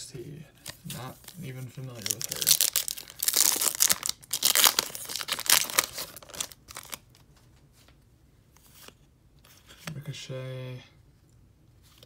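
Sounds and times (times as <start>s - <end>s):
trading cards rustling: 0.6s - 7.2s.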